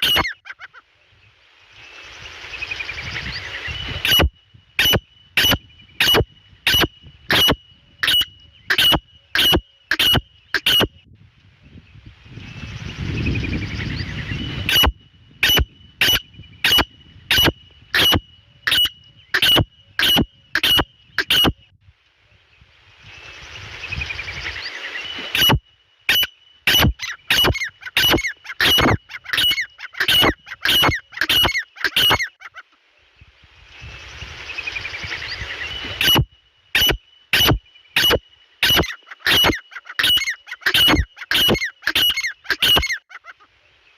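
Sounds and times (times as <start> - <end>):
francolin calling shrill notes: 36.8 - 43.1.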